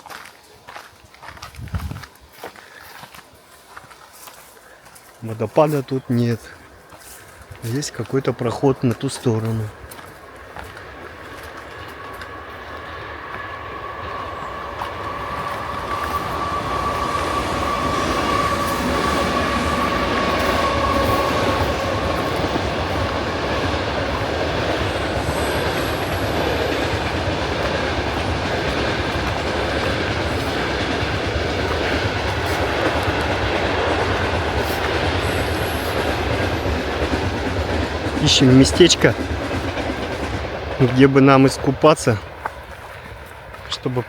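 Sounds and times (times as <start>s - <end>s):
train wheels clattering on rails: 3.8s - 44.0s
thin steady squeal: 11.0s - 33.0s.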